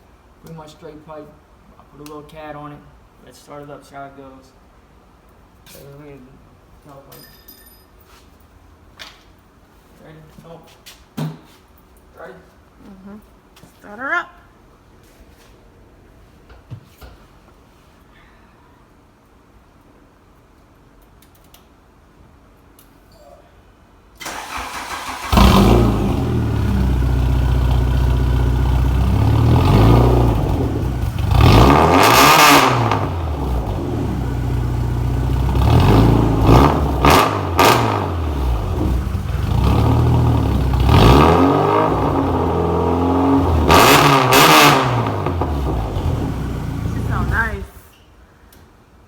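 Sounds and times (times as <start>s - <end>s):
car engine starting and revving: 24.2s - 47.6s.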